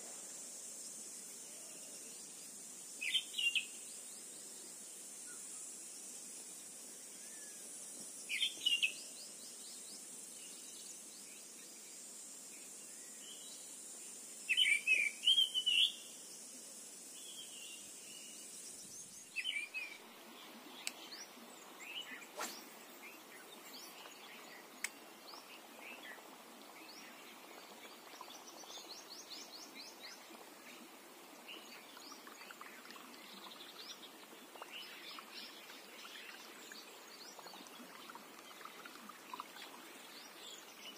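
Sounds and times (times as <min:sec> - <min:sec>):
high insect drone: 0:00.0 - 0:40.9
birds chirping: 0:17.2 - 0:40.9.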